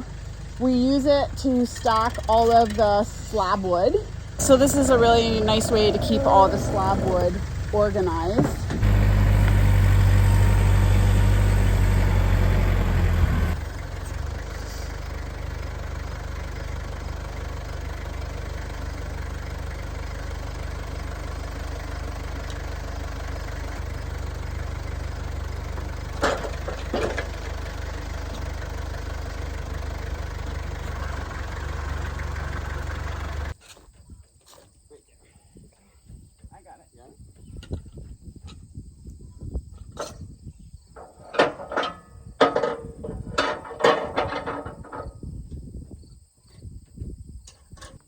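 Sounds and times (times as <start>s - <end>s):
engine running steadily: 0.0s - 33.6s.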